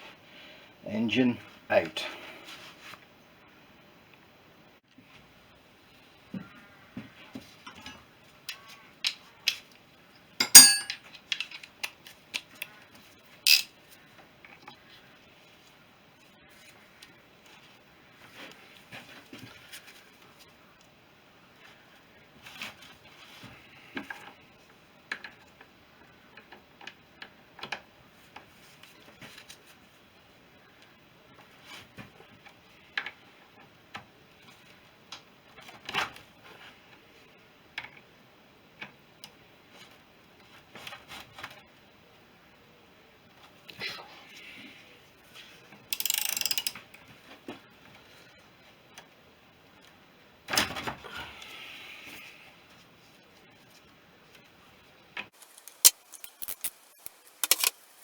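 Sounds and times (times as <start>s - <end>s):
metallic clicks of hand tools: 10.4s - 11.6s, 13.5s - 13.7s, 46.0s - 46.9s, 55.4s - 57.8s.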